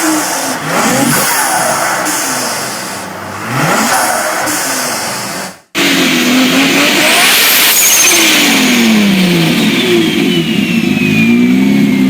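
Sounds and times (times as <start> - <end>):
car engine accelerating: 0.0 - 12.0
high whistle: 7.0 - 12.0.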